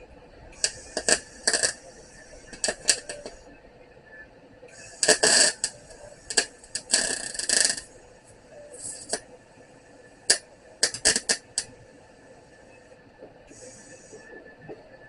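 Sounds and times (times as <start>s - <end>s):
steady high hiss: 0.4s - 3.5s, 4.7s - 14.4s
welder arc crackling: 0.6s - 3.4s, 4.9s - 9.3s, 10.2s - 11.7s.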